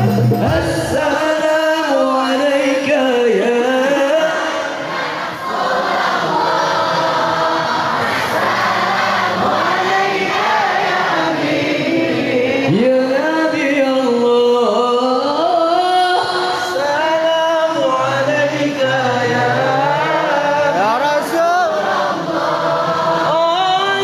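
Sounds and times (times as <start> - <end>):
chorus of voices singing: 0.0 - 24.0.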